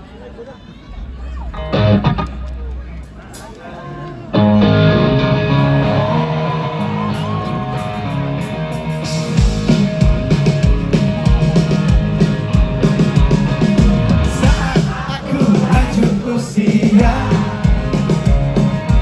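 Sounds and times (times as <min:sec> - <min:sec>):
sustained guitar chords: 0:00.9 - 0:19.0
drums with kick-drum beat: 0:06.8 - 0:19.0.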